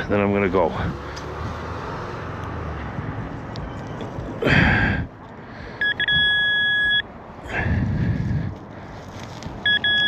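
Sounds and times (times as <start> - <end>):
metal detector beep: 5.8 - 7.1, 9.6 - 10.0.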